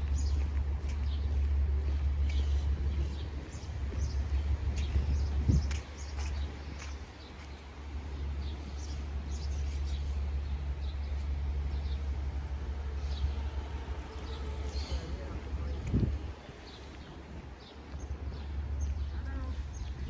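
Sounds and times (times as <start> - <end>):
low wind rumble: 0.0 - 20.0.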